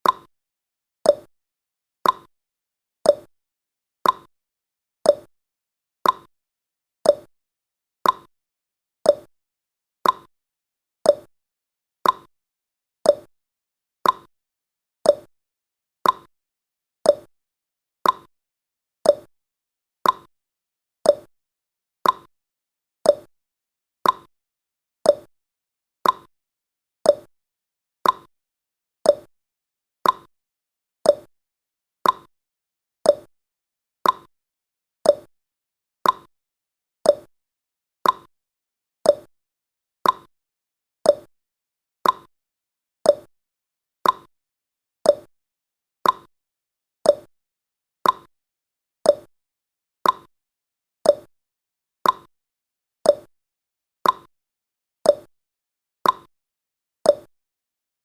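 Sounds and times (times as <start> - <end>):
timer ticking: 0.0 - 0.3, 1.1 - 1.3, 2.0 - 2.3, 3.1 - 3.3, 4.0 - 4.3, 5.1 - 5.3, 6.0 - 6.3, 7.1 - 7.3, 8.0 - 8.3, 9.1 - 9.3, 10.0 - 10.3, 11.1 - 11.3, 12.0 - 12.3, 13.1 - 13.3, 14.0 - 14.3, 15.1 - 15.3, 16.0 - 16.3, 17.1 - 17.3, 18.0 - 18.3, 19.0 - 19.3, 20.0 - 20.3, 21.1 - 21.3, 22.0 - 22.3, 23.1 - 23.3, 24.0 - 24.3, 25.1 - 25.3, 26.0 - 26.3, 27.1 - 27.3, 28.0 - 28.3, 29.1 - 29.3, 30.0 - 30.3, 31.1 - 31.3, 32.0 - 32.3, 33.1 - 33.3, 34.0 - 34.3, 35.0 - 35.3, 36.0 - 36.3, 37.1 - 37.3, 38.0 - 38.3, 39.1 - 39.3, 40.0 - 40.3, 41.1 - 41.3, 42.0 - 42.3, 43.1 - 43.3, 44.0 - 44.3, 45.1 - 45.3, 46.0 - 46.3, 47.1 - 47.3, 48.0 - 48.3, 49.1 - 49.3, 50.0 - 50.3, 51.1 - 51.3, 52.0 - 52.3, 53.1 - 53.3, 54.0 - 54.3, 55.1 - 55.3, 56.0 - 56.3, 57.1 - 57.3.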